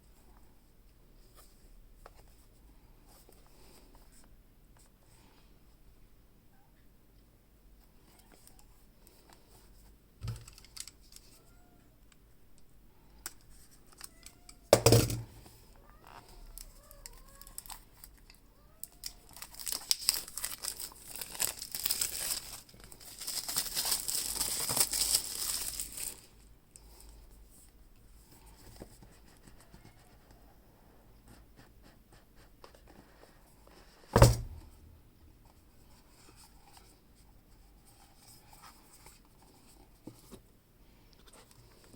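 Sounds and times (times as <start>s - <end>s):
box set down knocks: 14.8s - 15.4s, 34.2s - 34.8s
plastic wrap tearing and crinkling: 17.4s - 26.3s.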